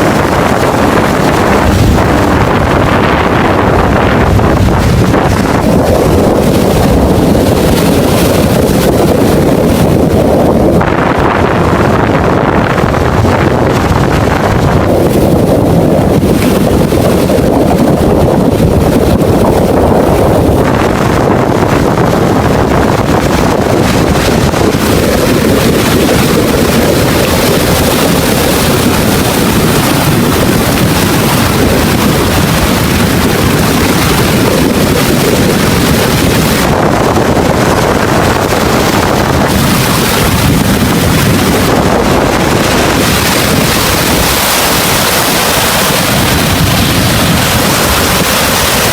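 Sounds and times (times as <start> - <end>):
heavy sea waves rushing: 0.0 - 48.9
wind buffeting microphone: 0.0 - 48.9.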